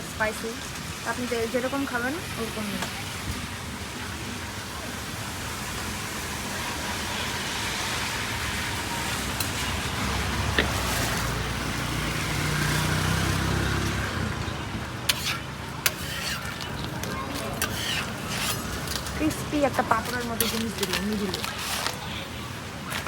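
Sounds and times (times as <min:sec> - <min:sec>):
street traffic noise: 0:00.0 - 0:23.0
rain hissing: 0:00.1 - 0:22.1
motor vehicle passing: 0:05.6 - 0:23.0.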